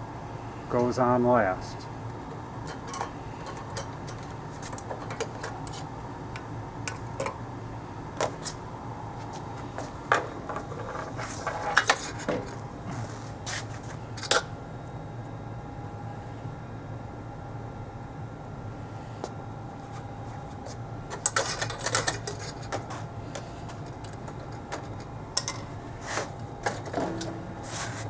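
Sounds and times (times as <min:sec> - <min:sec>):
steady low hum: 0:00.0 - 0:28.0
metal tools clicking and clinking: 0:02.6 - 0:04.3, 0:21.2 - 0:22.8, 0:24.0 - 0:25.7
metal clanks: 0:26.6 - 0:27.7.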